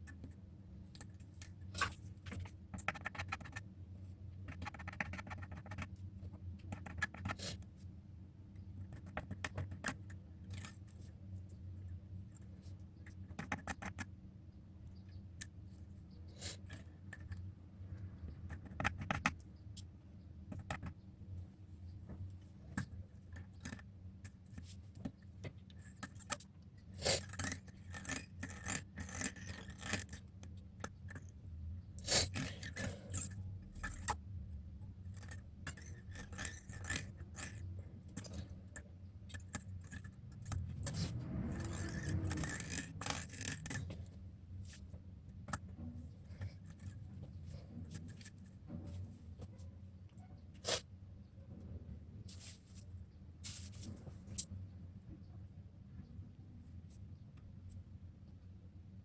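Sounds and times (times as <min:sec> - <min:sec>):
steady low hum: 0:00.0 - 0:59.0
small tools scraping on glass: 0:39.8 - 0:44.0.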